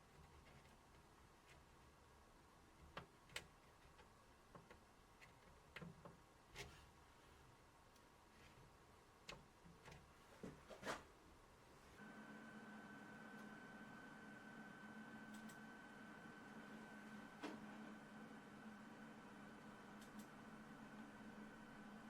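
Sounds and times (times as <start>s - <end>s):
faint clicks and light taps: 2.7s - 6.7s.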